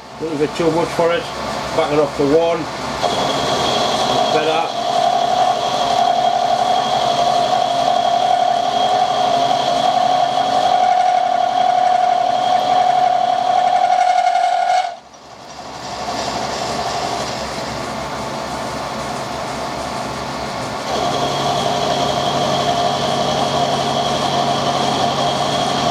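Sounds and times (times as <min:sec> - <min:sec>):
machine running noise: 0:00.0 - 0:25.9
milling cutter high-pitched whine: 0:03.0 - 0:15.1, 0:20.9 - 0:25.9.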